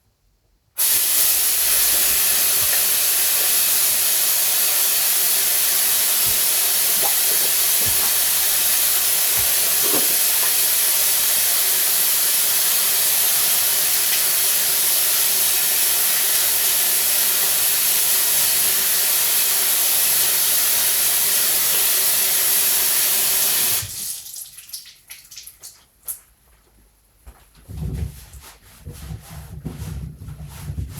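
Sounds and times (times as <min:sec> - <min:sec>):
tap water running into sink: 0:00.8 - 0:25.7
faint water drips: 0:24.0 - 0:26.3.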